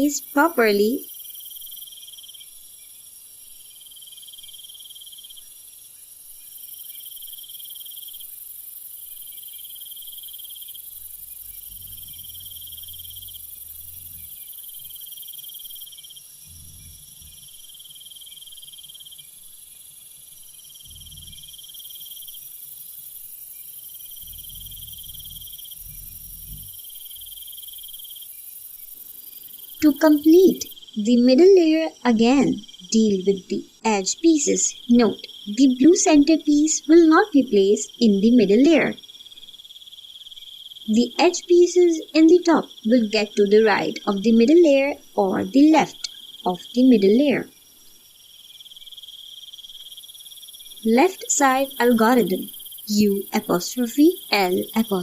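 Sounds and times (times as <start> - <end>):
insect trill: 0.0 - 55.0
steady high hiss: 5.3 - 32.7
faint low thumps: 16.4 - 17.5, 20.8 - 21.5, 24.2 - 26.8.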